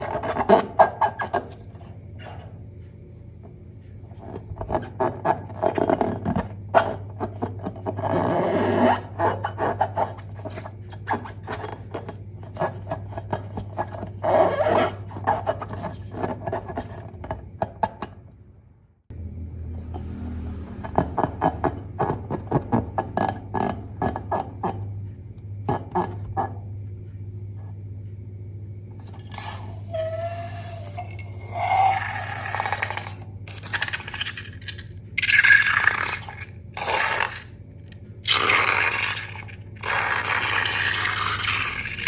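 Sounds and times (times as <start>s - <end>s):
low hum: 18.5s - 42.0s.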